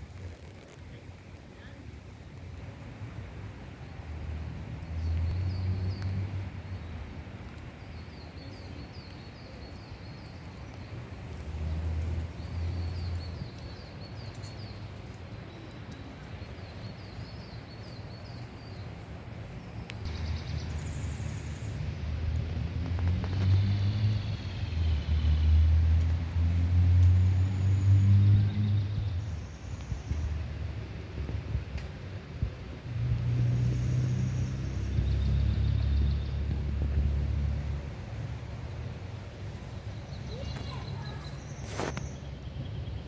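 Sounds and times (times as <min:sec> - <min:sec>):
songbird chirping: 0:04.8 - 0:43.0
rain hiss: 0:08.6 - 0:42.4
low rumbling surges: 0:18.8 - 0:41.6.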